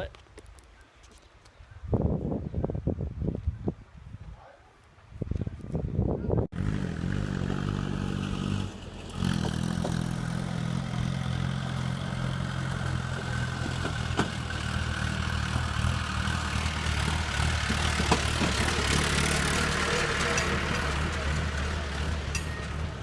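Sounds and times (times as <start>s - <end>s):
vehicle engine running: 6.6s - 23.0s
knocks from vehicle body: 13.6s - 14.4s.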